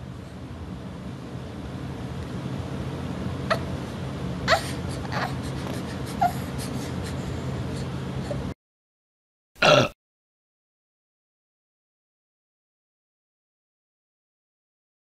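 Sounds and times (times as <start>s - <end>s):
steady low hum: 0.0s - 8.6s
short rising whimpers: 3.5s - 8.6s.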